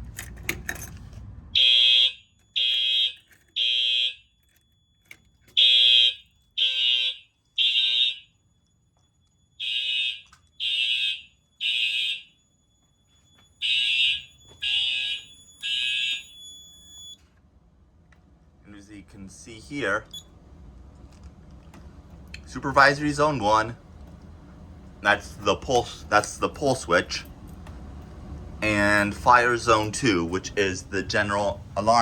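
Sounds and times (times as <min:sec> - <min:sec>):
fire alarm horn blasts: 0:01.5 - 0:17.3.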